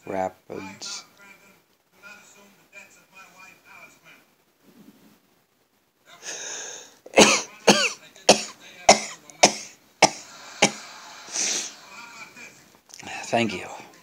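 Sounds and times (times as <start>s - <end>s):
breath in: 6.2s - 7.0s, 10.1s - 11.9s
breath out: 6.2s - 7.0s, 10.0s - 11.8s
person sneezing: 6.2s - 11.7s.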